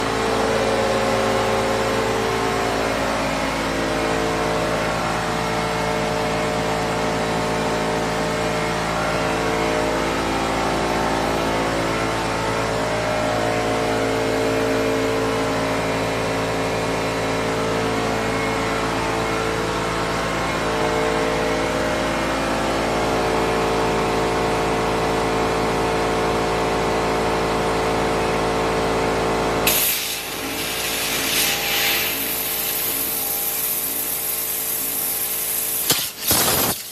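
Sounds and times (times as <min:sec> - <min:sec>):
waterjet machine humming: 0:29.7 - 0:36.9
water hissing: 0:35.8 - 0:36.9.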